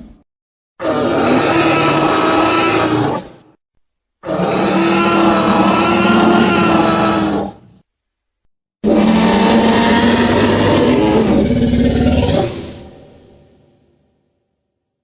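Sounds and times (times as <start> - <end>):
dinosaur roar: 0.8 - 3.4, 4.2 - 7.6, 8.8 - 13.6.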